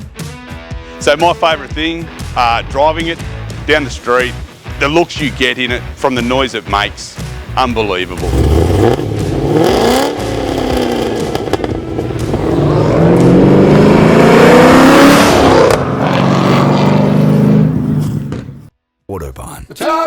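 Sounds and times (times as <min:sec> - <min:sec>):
car engine accelerating hard: 0:08.2 - 0:18.3.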